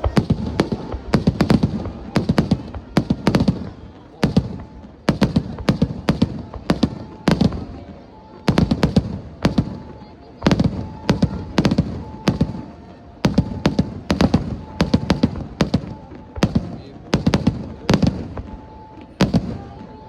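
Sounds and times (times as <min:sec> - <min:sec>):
fireworks sharp bangs: 0:00.0 - 0:20.0.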